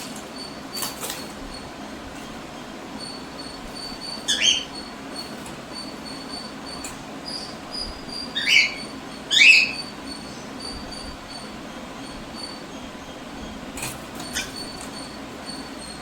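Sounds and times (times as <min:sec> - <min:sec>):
faint high chirp: 0:03.0 - 0:12.6
cockatiel squawks: 0:04.2 - 0:04.8.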